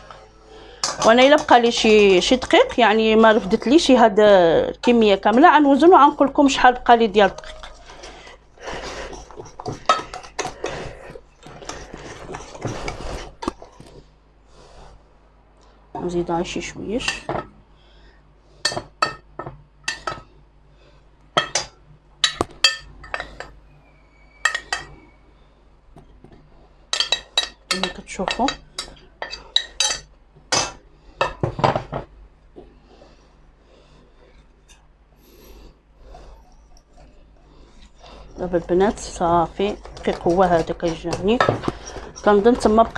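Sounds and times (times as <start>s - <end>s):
spoon scraping against a bowl: 7.2s - 13.7s, 22.6s - 25.2s, 36.3s - 42.9s.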